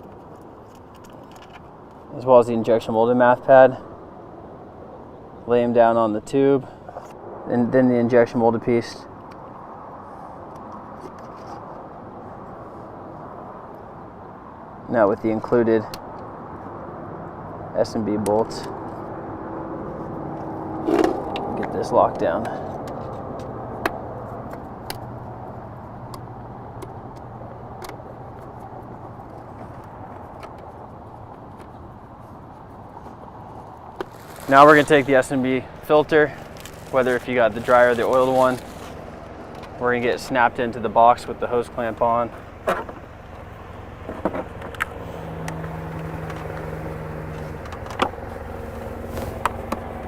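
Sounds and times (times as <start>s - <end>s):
steady low hum: 18.6s - 50.0s.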